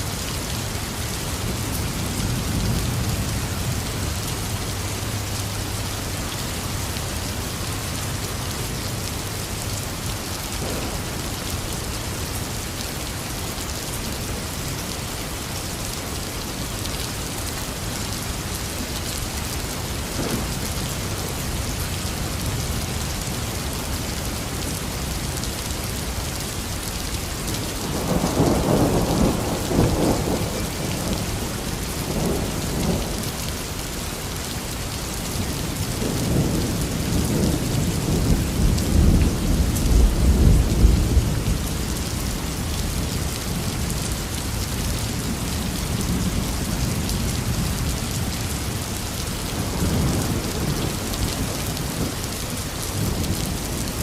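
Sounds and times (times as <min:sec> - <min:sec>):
heavy rain: 0:00.0 - 0:54.0
thunder rumbling: 0:10.6 - 0:11.6.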